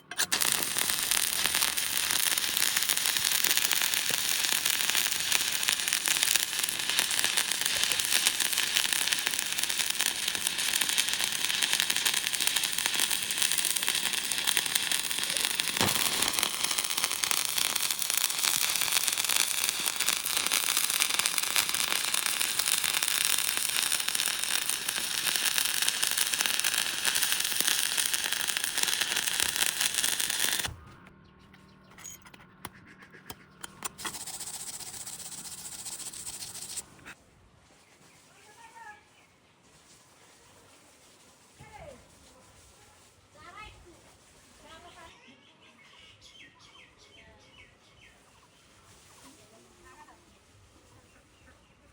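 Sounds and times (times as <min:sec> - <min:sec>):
electric arc welding crackling: 0:00.1 - 0:30.8, 0:34.0 - 0:36.8.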